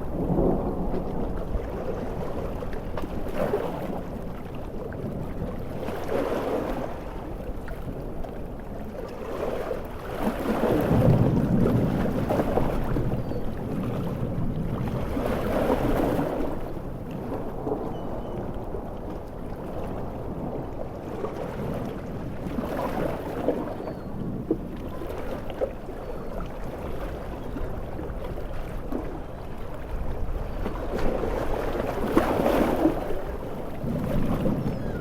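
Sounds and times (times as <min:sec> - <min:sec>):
rain: 0:00.0 - 0:04.2, 0:10.6 - 0:15.2
ocean waves breaking: 0:00.0 - 0:35.0.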